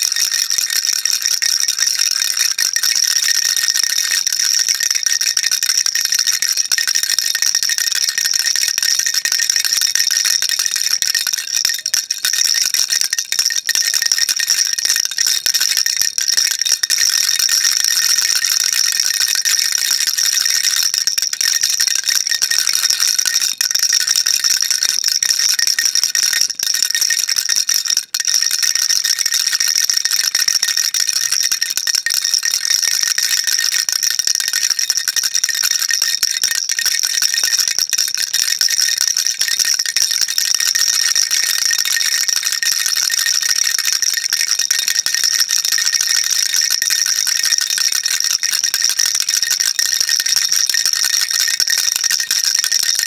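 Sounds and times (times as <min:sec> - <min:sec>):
baby rattle shaken: 0:00.0 - 0:01.4, 0:03.4 - 0:24.2, 0:39.4 - 0:40.3, 0:41.5 - 0:43.5, 0:44.1 - 0:44.7.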